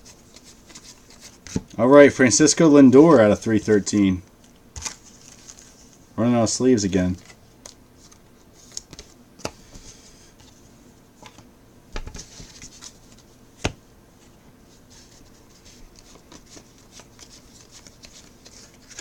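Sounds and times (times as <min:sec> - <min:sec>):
cards rustling: 0:00.0 - 0:09.2, 0:12.1 - 0:13.3, 0:14.9 - 0:19.0.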